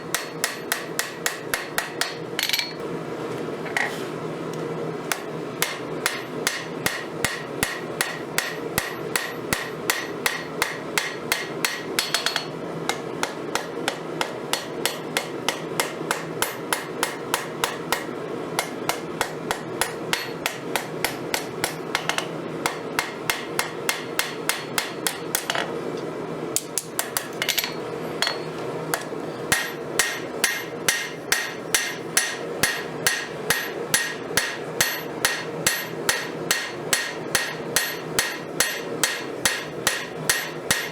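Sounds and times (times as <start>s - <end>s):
hammer ringing on steel: 29.5s - 40.9s.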